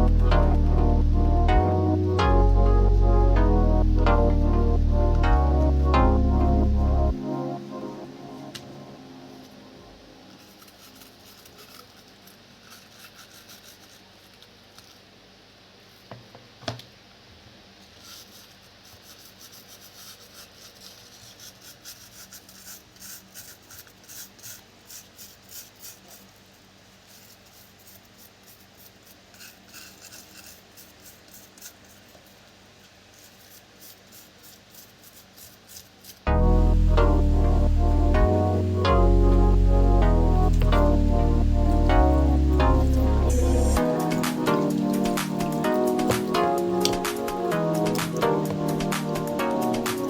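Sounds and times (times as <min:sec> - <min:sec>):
faint hand rubbing: 0:17.9 - 0:50.0.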